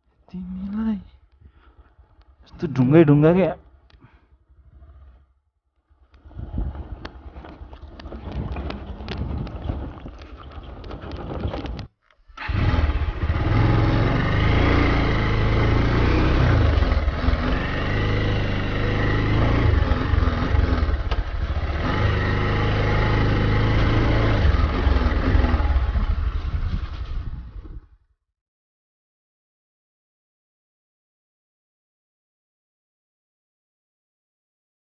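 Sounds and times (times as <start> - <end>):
motorcycle engine running: 5.9 - 11.8, 12.4 - 27.9
rattling and clicks: 6.1 - 12.6.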